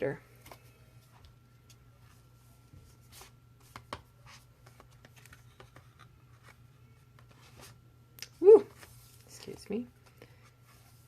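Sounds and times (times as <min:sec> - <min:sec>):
book pages rustling and turning: 0:00.4 - 0:07.8, 0:08.7 - 0:11.0.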